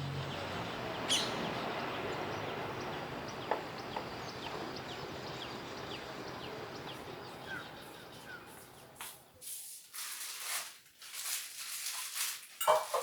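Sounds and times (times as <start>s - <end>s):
small birds chirping: 0.0s - 9.4s.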